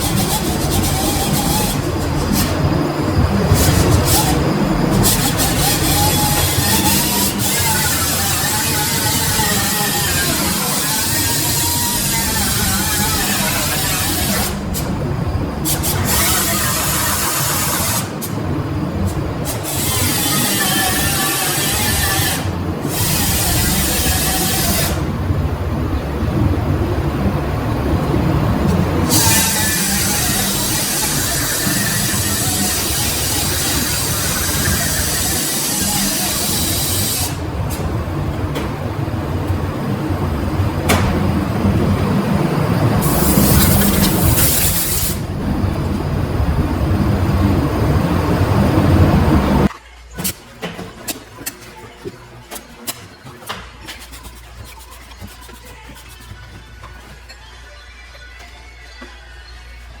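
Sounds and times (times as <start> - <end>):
spraying air hiss: 0.0 - 14.9, 19.5 - 25.0, 29.0 - 37.9, 43.0 - 46.3
machine humming: 0.0 - 49.7.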